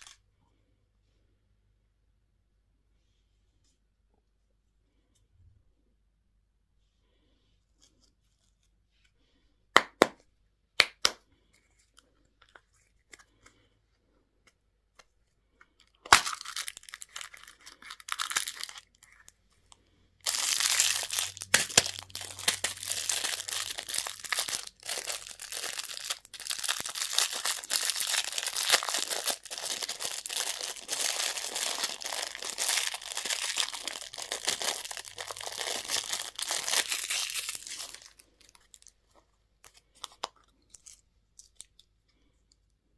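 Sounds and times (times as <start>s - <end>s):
candy wrapper crinkling: 0.0s - 0.2s, 15.8s - 42.0s.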